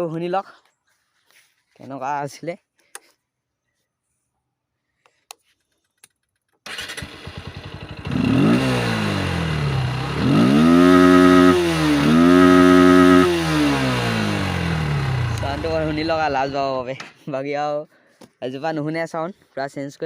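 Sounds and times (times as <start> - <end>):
motorcycle engine starting: 6.6 - 17.0
motorcycle engine revving: 6.7 - 16.9.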